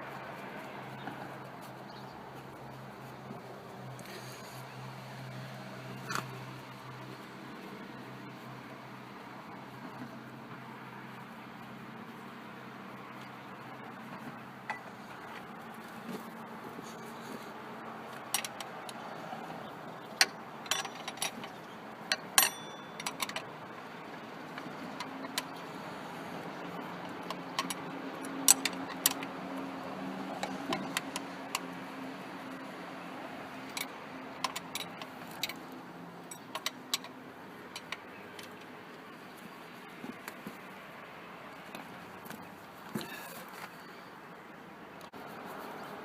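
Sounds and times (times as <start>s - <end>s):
metallic clinks of hand tools: 22.1s - 23.4s.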